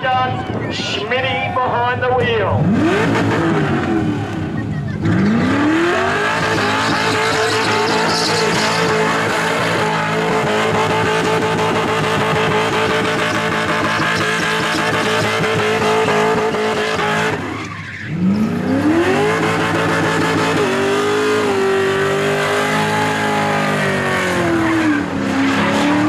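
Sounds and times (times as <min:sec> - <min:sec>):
car engine revving high: 0:02.4 - 0:26.0
tyres squealing: 0:06.2 - 0:11.9, 0:13.2 - 0:20.7.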